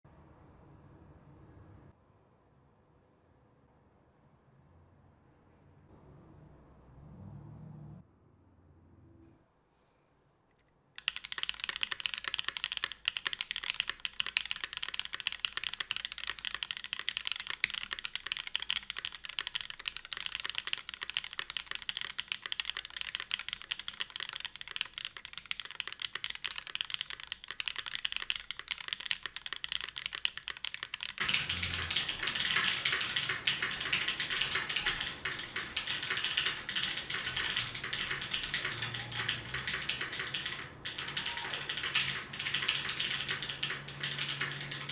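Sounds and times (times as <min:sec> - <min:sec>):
fast mechanical keyboard typing: 0:11.0 - 0:44.9.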